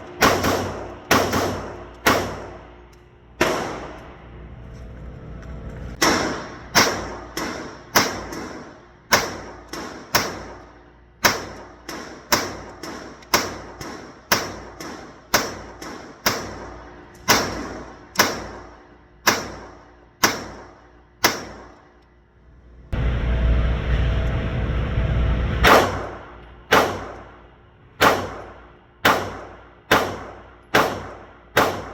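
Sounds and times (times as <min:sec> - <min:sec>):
single gunshots: 0:00.2 - 0:02.6, 0:03.4 - 0:04.0, 0:06.0 - 0:10.6, 0:11.2 - 0:21.8, 0:25.6 - 0:27.4, 0:28.0 - 0:31.9.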